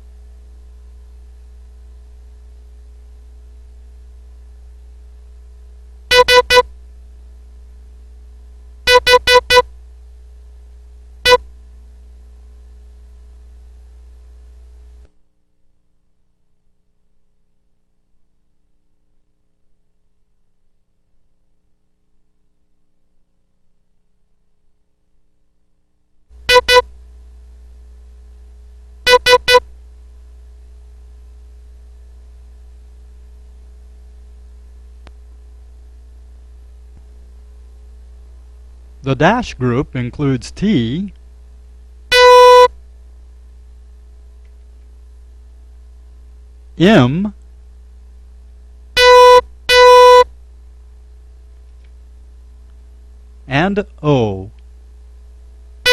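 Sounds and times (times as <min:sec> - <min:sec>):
steady low hum: 0:00.0 - 0:55.9
morse code beeps: 0:06.1 - 0:06.6, 0:08.9 - 0:09.6, 0:26.5 - 0:26.8, 0:29.1 - 0:29.6, 0:42.1 - 0:42.7, 0:49.0 - 0:50.2.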